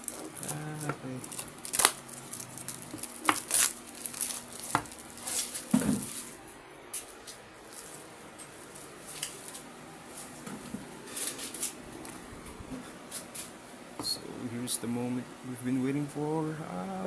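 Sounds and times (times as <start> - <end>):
packaging scraping and rustling: 0.0 - 6.4, 11.0 - 12.2.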